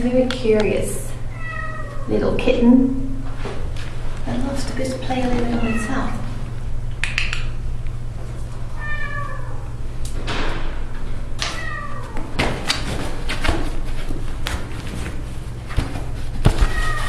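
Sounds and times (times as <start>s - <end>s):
steady low hum: 0.0s - 17.0s
kitten meowing: 1.3s - 2.1s, 5.6s - 6.1s, 8.8s - 9.6s, 11.5s - 12.1s.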